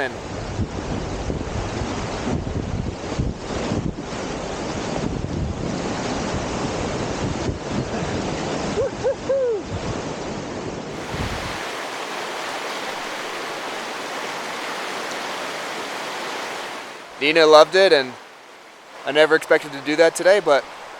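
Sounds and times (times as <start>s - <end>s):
wind buffeting microphone: 0.0s - 16.9s
creek water rushing over rapids: 10.9s - 20.9s.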